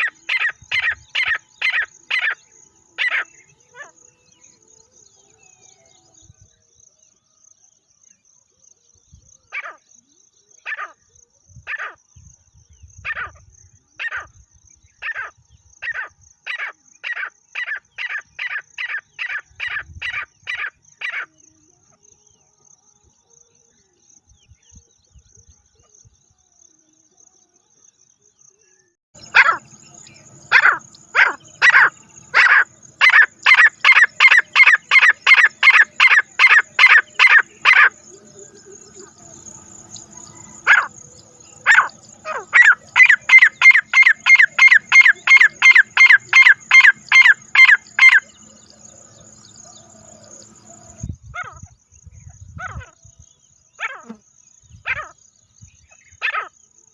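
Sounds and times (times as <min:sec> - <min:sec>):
francolin calling: 0:00.0 - 0:06.4, 0:29.2 - 0:56.7.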